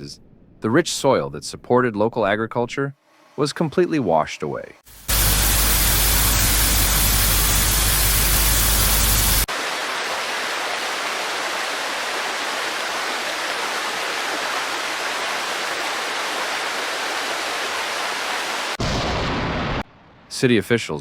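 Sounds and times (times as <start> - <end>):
floodwater rushing: 9.2 - 18.8.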